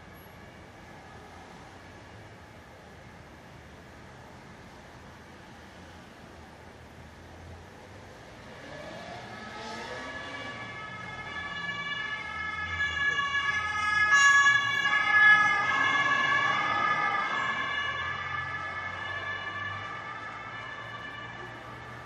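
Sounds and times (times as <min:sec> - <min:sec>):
vehicle noise rumble: 0:00.0 - 0:22.0
ambulance siren passing: 0:08.3 - 0:22.0.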